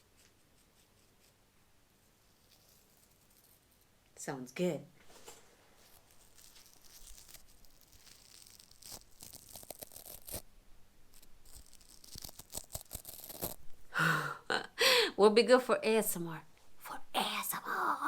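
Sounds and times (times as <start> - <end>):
scratchy rustling: 2.0 - 3.9, 5.0 - 10.5, 11.1 - 13.7.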